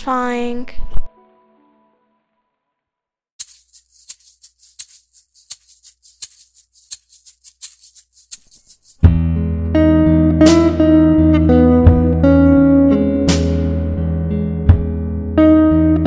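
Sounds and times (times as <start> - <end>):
scraper scraping wax: 3.4 - 9.0.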